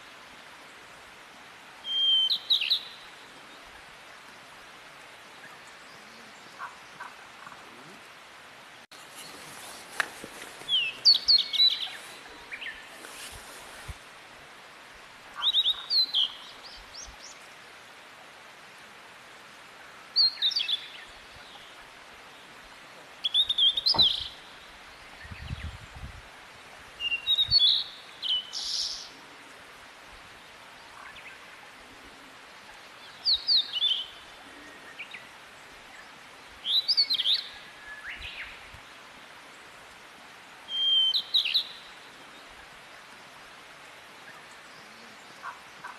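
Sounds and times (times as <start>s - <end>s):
songbird singing: 1.8s - 4.0s, 5.0s - 8.2s, 9.0s - 14.0s, 15.3s - 17.6s, 19.8s - 45.9s.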